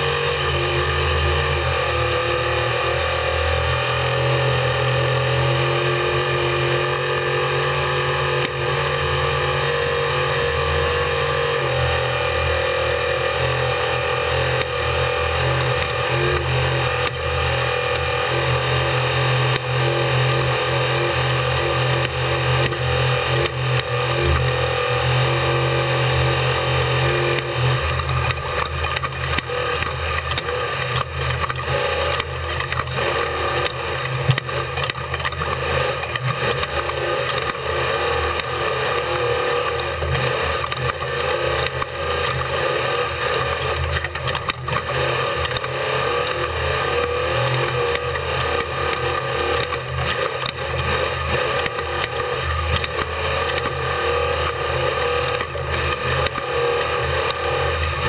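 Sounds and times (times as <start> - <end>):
truck engine running hard: 0.0 - 58.0.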